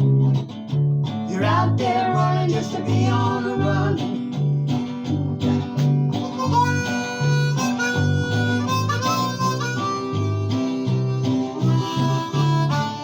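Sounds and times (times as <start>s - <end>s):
steady bass line: 0.0s - 8.9s
acoustic guitar strumming: 0.0s - 13.0s
harmonica playing: 5.6s - 13.0s.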